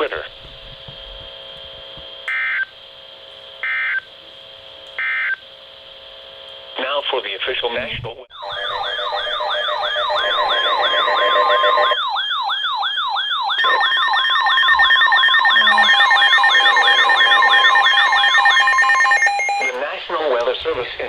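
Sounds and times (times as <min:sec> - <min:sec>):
steady alarm tones: 0:01.0 - 0:04.2, 0:04.9 - 0:06.4, 0:08.3 - 0:19.9.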